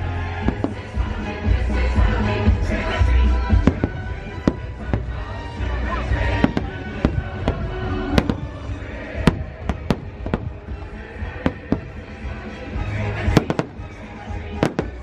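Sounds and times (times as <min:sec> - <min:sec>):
loud show music: 0:00.0 - 0:15.0
fireworks bangs: 0:00.3 - 0:01.6, 0:02.5 - 0:15.0
low rumble: 0:00.4 - 0:14.8.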